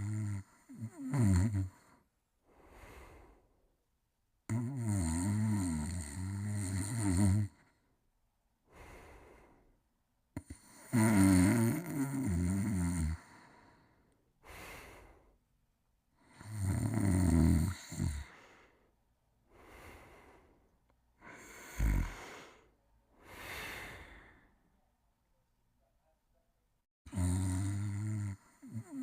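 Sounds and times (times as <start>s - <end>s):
person snoring: 0.0s - 2.0s, 4.5s - 7.7s, 10.4s - 13.9s, 16.2s - 18.7s, 21.2s - 24.5s, 27.1s - 29.0s
soft airy breath: 2.4s - 3.6s, 8.7s - 9.8s, 13.3s - 15.4s, 18.2s - 24.7s.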